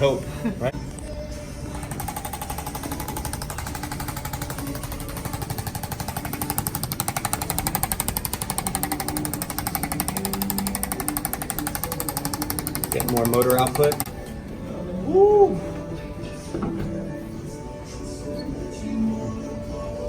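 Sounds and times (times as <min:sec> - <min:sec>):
percussion massager hammering: 0:01.7 - 0:14.3.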